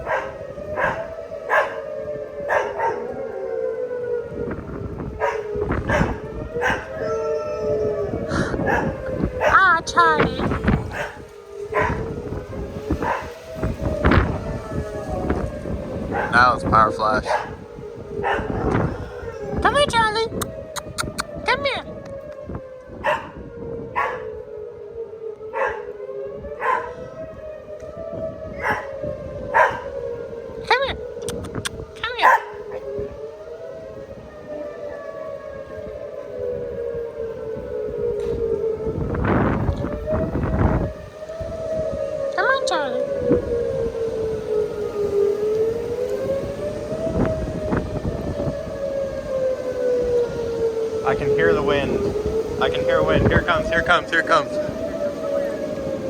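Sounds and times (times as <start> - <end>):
dog barking: 0.0 - 3.1, 5.2 - 6.9, 8.6 - 9.7, 10.8 - 12.0, 13.0 - 13.4, 16.1 - 16.4, 17.2 - 17.6, 18.2 - 18.8, 23.0 - 23.4, 24.0 - 24.3, 25.5 - 25.9, 26.6 - 27.0, 28.6 - 29.9, 32.2 - 32.8
warning siren: 0.0 - 56.0
wind rumble on microphone: 0.0 - 56.0.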